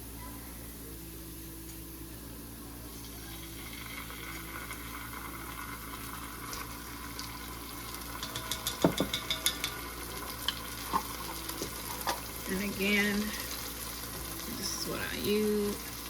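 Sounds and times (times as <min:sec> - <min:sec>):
paste sizzling in a pan: 0:02.9 - 0:16.0
utensil clicking against pan: 0:08.2 - 0:09.8.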